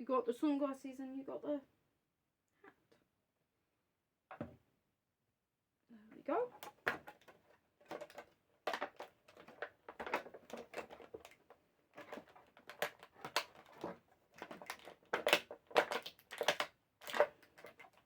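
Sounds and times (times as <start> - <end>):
plastic packaging crinkling and clicking: 6.6 - 18.0.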